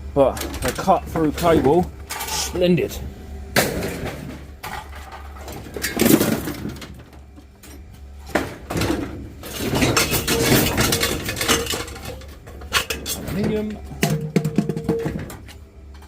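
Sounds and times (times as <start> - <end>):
metal scrap clattering: 1.6 - 2.6, 8.3 - 15.6.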